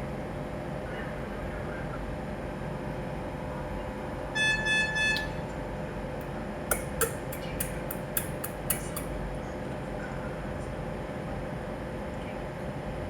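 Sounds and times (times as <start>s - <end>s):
light rhythmic pats on a back: 6.7s - 9.1s.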